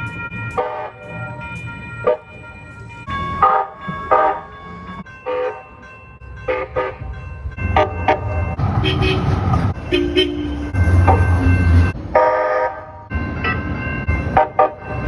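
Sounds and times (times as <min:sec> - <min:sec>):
rumble of trains: 0:00.0 - 0:15.0
train bells: 0:00.0 - 0:15.0
train horn: 0:07.7 - 0:13.0.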